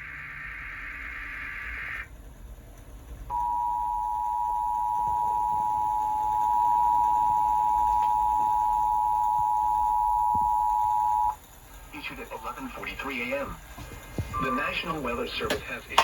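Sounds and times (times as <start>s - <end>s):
two-tone alarm signal: 0.0s - 2.1s, 3.3s - 11.4s, 14.3s - 15.0s.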